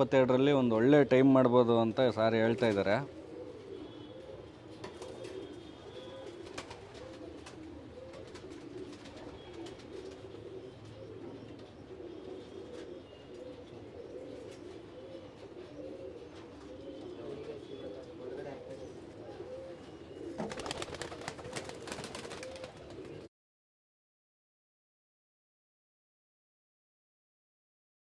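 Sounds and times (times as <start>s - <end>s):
pigeons cooing: 2.3s - 23.3s.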